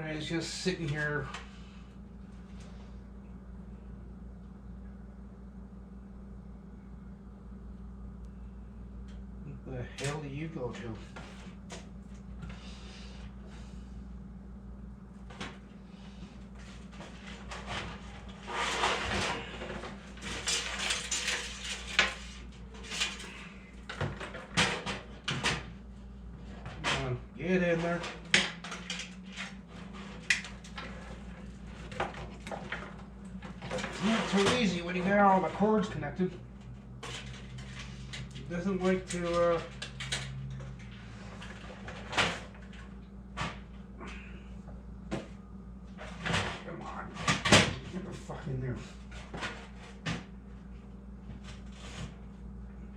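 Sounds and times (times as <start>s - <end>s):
scrape against computer case: 17.4s - 19.6s.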